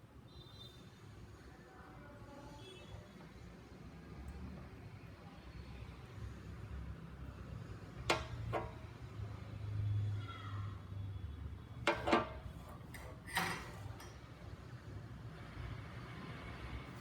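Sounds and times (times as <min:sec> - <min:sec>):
small tools clicking and tapping: 0:08.1 - 0:08.8, 0:11.9 - 0:14.2.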